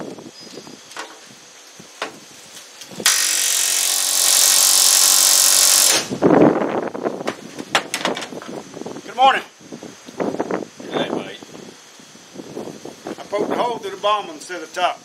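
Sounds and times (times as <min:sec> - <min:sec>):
handheld power tool running: 0:03.0 - 0:06.2.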